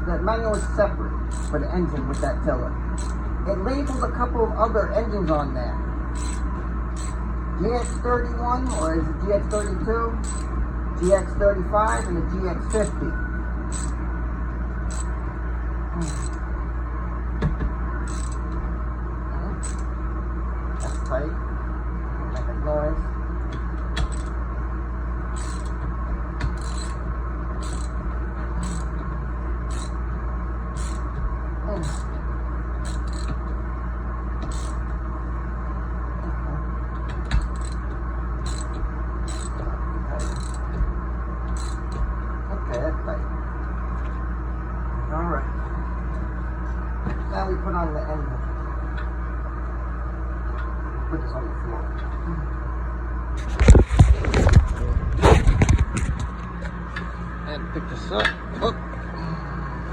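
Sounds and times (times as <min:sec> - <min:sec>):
low hum: 0:00.0 - 0:22.4, 0:23.0 - 0:42.3
metal tools clinking and scraping: 0:00.5 - 0:02.3, 0:03.0 - 0:03.2, 0:06.2 - 0:06.4, 0:07.0 - 0:07.2, 0:07.8 - 0:11.3, 0:11.9 - 0:13.0, 0:13.7 - 0:14.0, 0:16.0 - 0:16.4, 0:18.1 - 0:18.4, 0:20.8 - 0:21.1, 0:25.4 - 0:25.7, 0:26.6 - 0:27.0, 0:27.6 - 0:27.9, 0:28.6 - 0:28.9, 0:30.8 - 0:31.0, 0:31.8 - 0:32.1, 0:39.3 - 0:39.6, 0:40.2 - 0:40.6
ratchet wrench clicking: 0:00.5 - 0:02.4, 0:03.0 - 0:03.2, 0:06.2 - 0:07.2, 0:07.8 - 0:11.3, 0:11.9 - 0:13.0, 0:13.7 - 0:14.0, 0:14.9 - 0:15.1, 0:16.0 - 0:16.4, 0:18.1 - 0:18.4, 0:19.6 - 0:19.9, 0:20.8 - 0:21.1, 0:24.0 - 0:24.3, 0:25.4 - 0:25.8, 0:26.5 - 0:27.0, 0:27.6 - 0:28.0, 0:28.6 - 0:28.9, 0:29.7 - 0:30.0, 0:30.8 - 0:31.0, 0:31.8 - 0:32.1, 0:32.8 - 0:33.4, 0:34.4 - 0:34.8, 0:37.3 - 0:37.8, 0:38.5 - 0:39.6, 0:40.2 - 0:40.6, 0:41.6 - 0:42.0.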